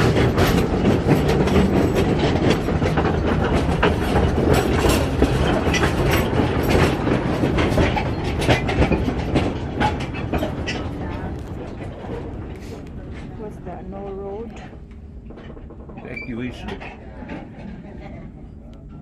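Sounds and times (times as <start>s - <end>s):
wheel clicks and rattles: 0.0s - 12.5s
mine carts rumbling on rails: 0.0s - 19.0s.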